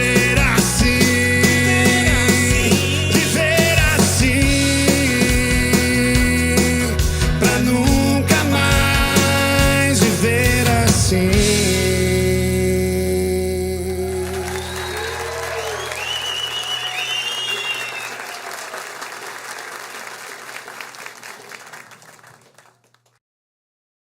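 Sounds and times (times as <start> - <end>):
cheering: 13.9 - 22.7
audience applause: 14.0 - 23.2.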